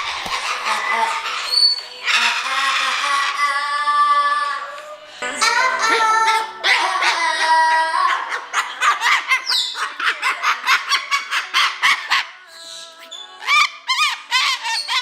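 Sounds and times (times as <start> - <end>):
parrot calling and squawking: 0.0 - 4.0, 5.8 - 15.0.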